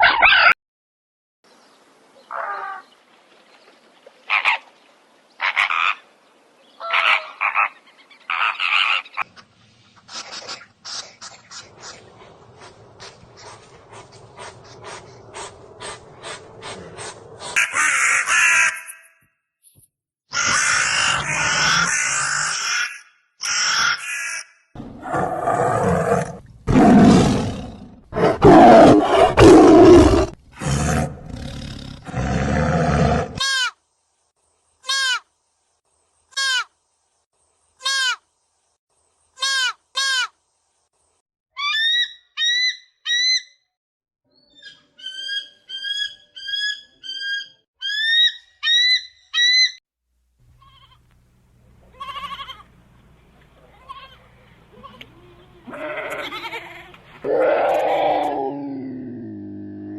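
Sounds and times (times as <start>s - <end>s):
big cat roaring and growling: 12.1s - 17.6s, 24.8s - 33.4s, 57.2s - 59.9s.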